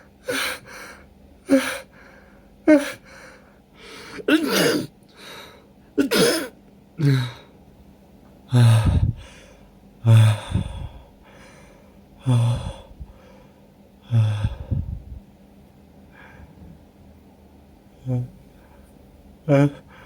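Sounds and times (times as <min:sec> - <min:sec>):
person sneezing: 0:04.1 - 0:04.9, 0:06.0 - 0:07.3.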